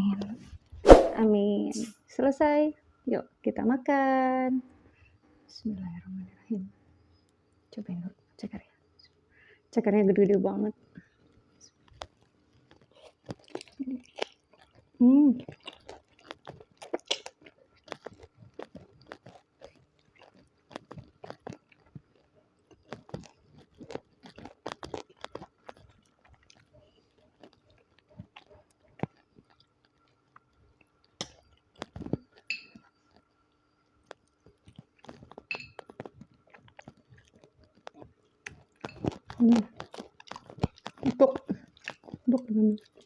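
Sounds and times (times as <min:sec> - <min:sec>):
chewing and crunching: 0:10.2 - 0:43.0.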